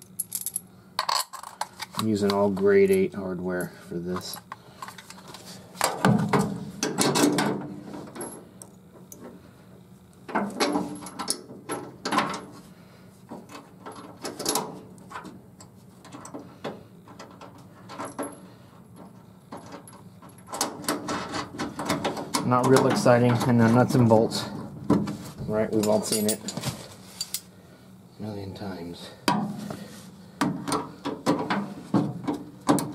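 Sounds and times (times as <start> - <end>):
metal tools clinking: 25.6 - 27.5.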